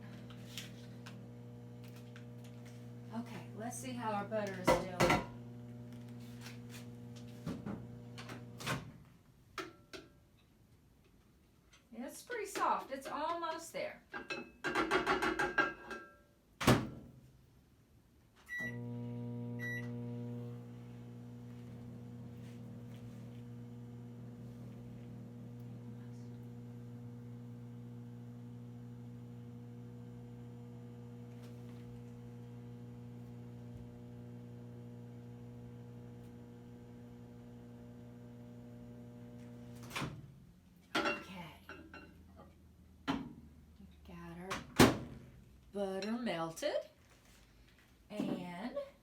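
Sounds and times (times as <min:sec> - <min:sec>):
microwave running hum: 0:00.0 - 0:08.8, 0:18.5 - 0:40.4.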